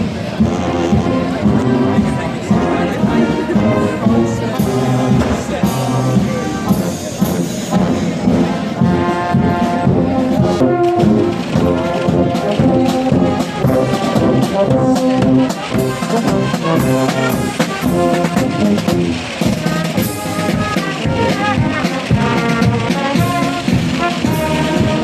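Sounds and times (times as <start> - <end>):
brass band playing: 0.0 - 25.0
drum beat: 0.4 - 25.0.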